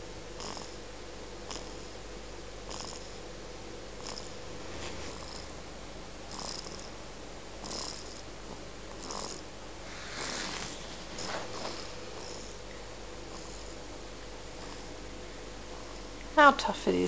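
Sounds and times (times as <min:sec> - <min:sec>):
pet snoring: 0:00.3 - 0:00.8, 0:01.4 - 0:02.0, 0:02.6 - 0:03.2, 0:04.0 - 0:05.6, 0:06.2 - 0:07.0, 0:07.6 - 0:13.9, 0:14.5 - 0:15.0.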